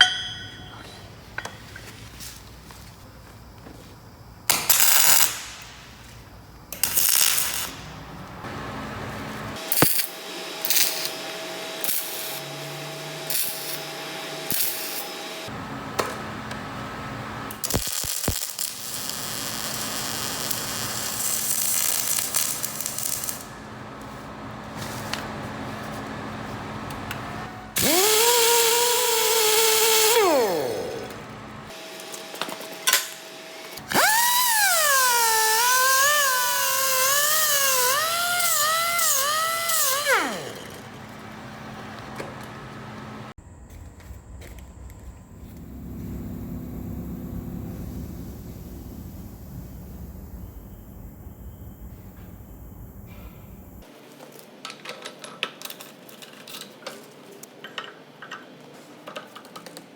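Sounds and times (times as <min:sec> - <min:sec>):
metal clanks and knocks: 0:00.0 - 0:01.8
power tool whining: 0:27.7 - 0:32.0, 0:33.6 - 0:43.3, 0:45.4 - 0:53.8
long hissing: 0:45.4 - 0:53.8.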